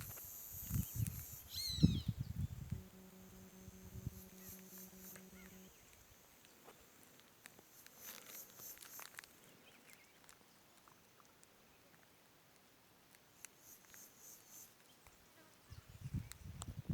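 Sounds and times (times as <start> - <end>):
high insect hiss: 0.0 - 9.7, 13.2 - 16.9
faint ticks and chirps: 0.0 - 16.9.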